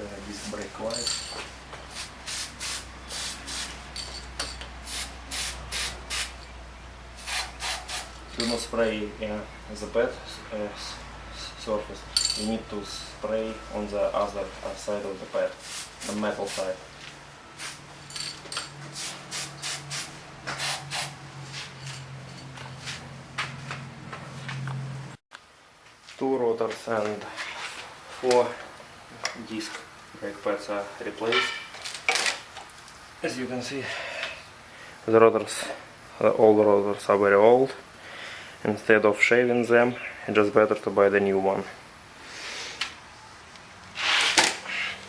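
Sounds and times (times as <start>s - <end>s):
aerosol spray hissing: 1.9s - 3.8s, 4.8s - 6.4s, 7.2s - 8.2s, 15.6s - 16.7s, 18.9s - 21.2s.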